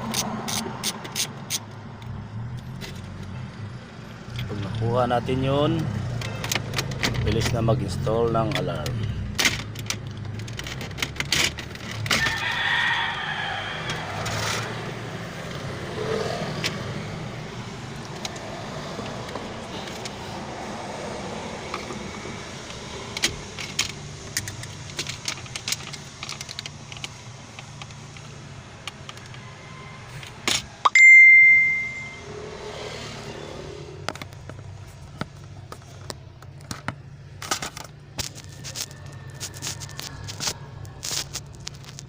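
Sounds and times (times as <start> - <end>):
clicks and light rattles: 22.6 - 29.4.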